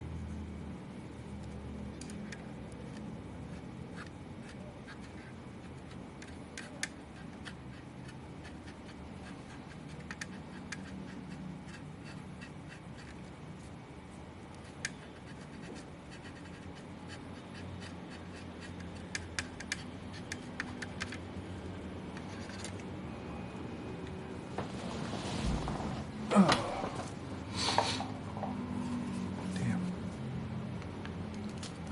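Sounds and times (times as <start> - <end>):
steady low hum: 0.0 - 31.9
faint scratching: 24.5 - 26.2.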